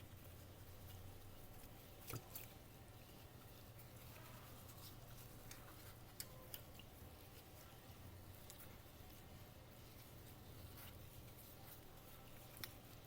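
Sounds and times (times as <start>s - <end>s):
faint low room hum: 0.0s - 13.0s.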